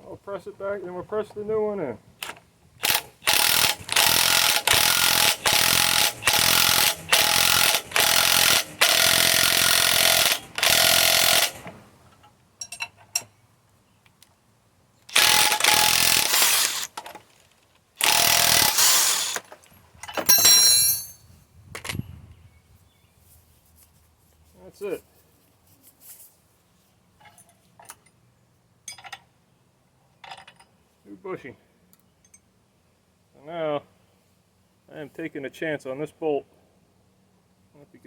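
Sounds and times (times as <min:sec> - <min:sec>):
impact wrench hammering: 0:02.8 - 0:11.7, 0:20.2 - 0:21.2.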